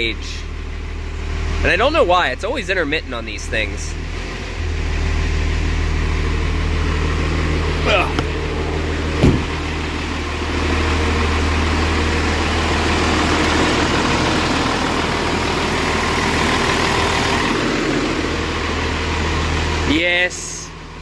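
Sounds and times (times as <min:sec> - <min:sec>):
truck engine idling: 0:04.8 - 0:20.0
short knock: 0:07.8 - 0:08.4, 0:09.2 - 0:09.6.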